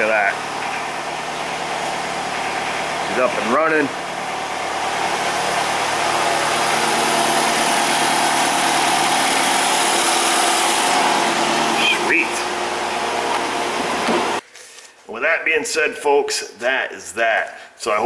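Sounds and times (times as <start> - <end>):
car engine idling: 0.0 - 14.4.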